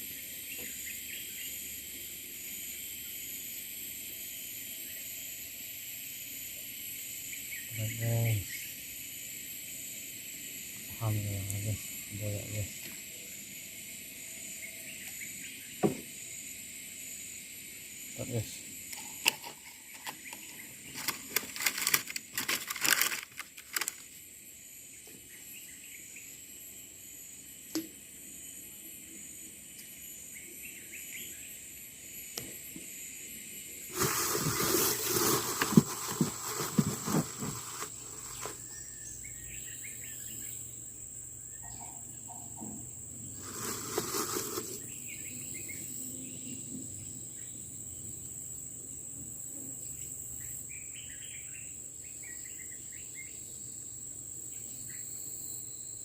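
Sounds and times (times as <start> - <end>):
insects droning: 0.0 - 56.0
faint bird chirps: 6.5 - 9.8, 33.2 - 47.6
clattering rustling noise: 19.0 - 24.0, 33.9 - 38.6, 43.4 - 44.8.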